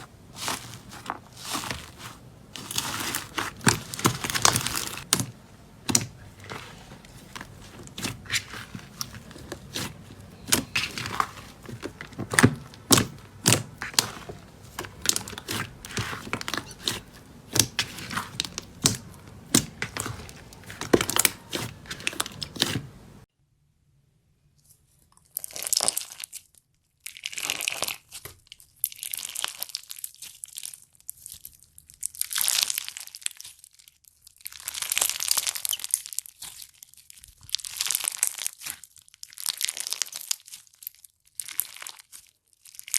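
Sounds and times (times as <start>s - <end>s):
slime crackling and popping: 0.0s - 23.2s
slime crinkling and tearing: 0.0s - 23.2s, 25.4s - 42.9s.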